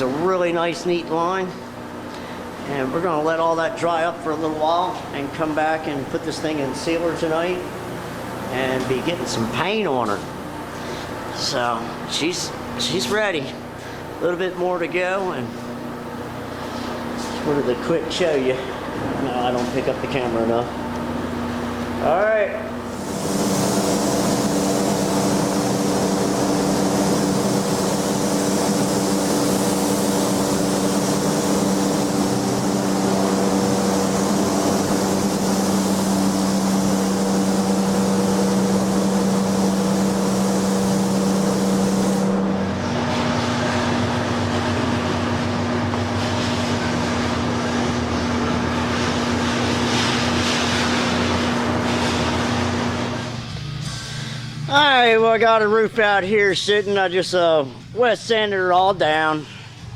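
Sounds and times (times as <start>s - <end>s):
motor humming: 18.0s - 54.7s
high hiss: 22.9s - 42.4s.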